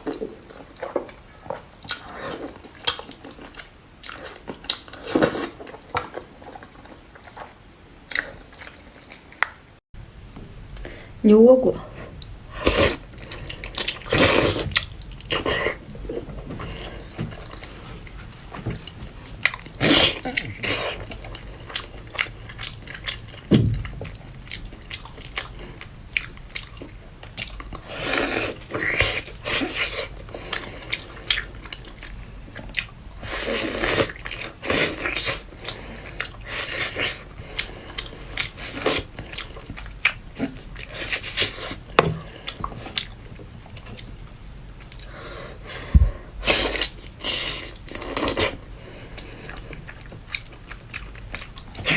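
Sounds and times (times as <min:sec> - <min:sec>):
crunching and slurping: 0:00.0 - 0:09.5, 0:12.2 - 0:45.2, 0:46.4 - 0:51.9.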